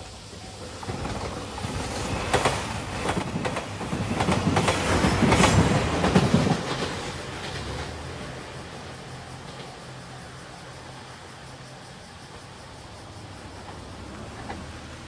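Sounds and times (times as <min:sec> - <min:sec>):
train running rumble: 0:00.0 - 0:15.0
train wheels clacking on rail joints: 0:00.3 - 0:10.1, 0:13.3 - 0:15.0.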